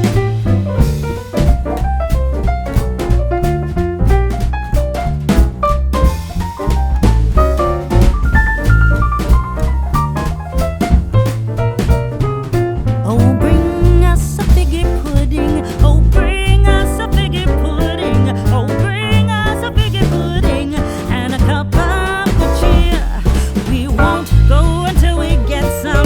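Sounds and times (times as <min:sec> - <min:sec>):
heavy bass line: 0:00.0 - 0:26.0.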